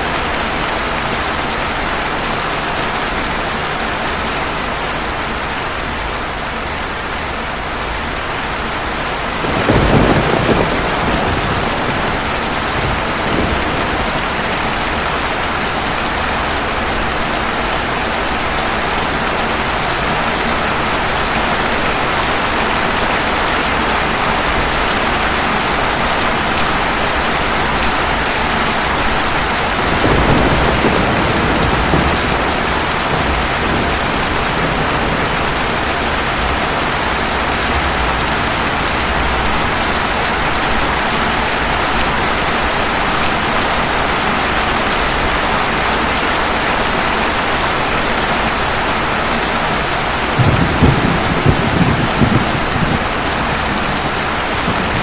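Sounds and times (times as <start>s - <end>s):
heavy rain on pavement: 0.0s - 55.0s
thunder rumbling: 9.3s - 17.1s, 27.6s - 42.9s, 49.5s - 55.0s.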